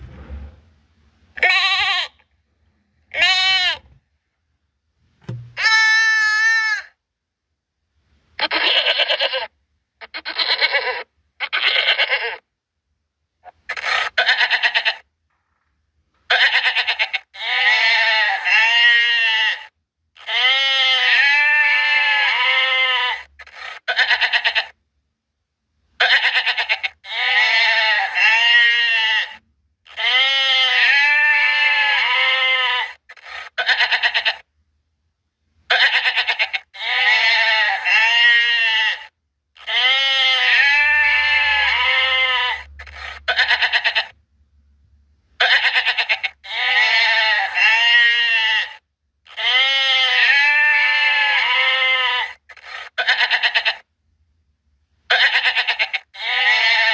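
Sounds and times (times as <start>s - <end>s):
goats bleating: 1.4s - 2.2s, 3.1s - 3.8s, 5.6s - 6.9s, 8.4s - 12.4s, 13.7s - 15.0s, 16.3s - 24.8s, 26.0s - 34.4s, 35.7s - 44.2s, 45.4s - 53.8s, 55.1s - 56.9s.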